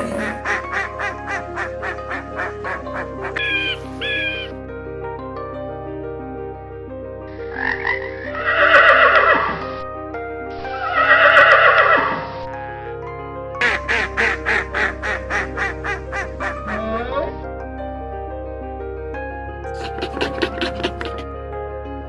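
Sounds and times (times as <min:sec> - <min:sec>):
animal calls: 0:00.0 - 0:04.5, 0:07.4 - 0:09.6, 0:15.4 - 0:17.4
background music: 0:00.0 - 0:22.0.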